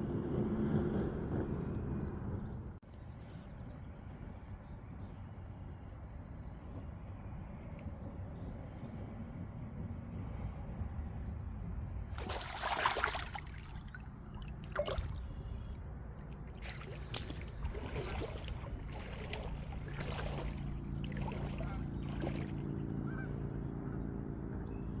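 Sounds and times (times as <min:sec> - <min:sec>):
low background rumble: 0:00.0 - 0:25.0
low steady hum: 0:01.2 - 0:25.0
water splashing and sloshing: 0:12.1 - 0:23.0.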